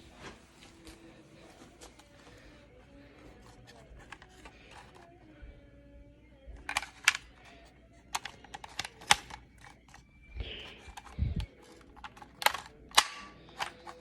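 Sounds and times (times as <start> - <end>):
plastic toy pistol clicking: 6.6 - 7.4, 8.1 - 10.0, 10.7 - 14.0.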